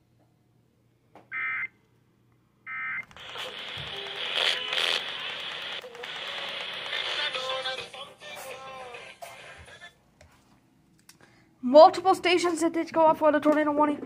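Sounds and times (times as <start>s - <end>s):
buzzy data bursts: 3.1s - 7.4s
hissy radio audio: 3.2s - 7.7s.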